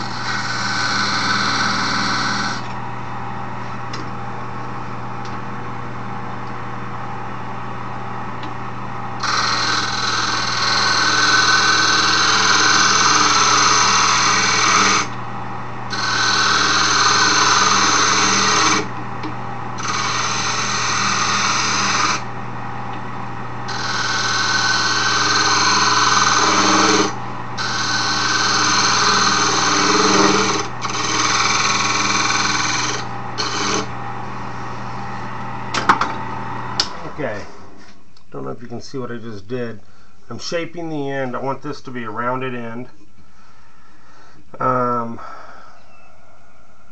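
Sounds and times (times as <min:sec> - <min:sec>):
turning tool cutting wood: 0:00.0 - 0:02.8, 0:09.2 - 0:15.2, 0:15.9 - 0:18.9, 0:19.8 - 0:22.3, 0:23.6 - 0:34.0
wood lathe humming: 0:00.0 - 0:02.8, 0:09.2 - 0:15.2, 0:15.9 - 0:22.4, 0:23.0 - 0:35.5.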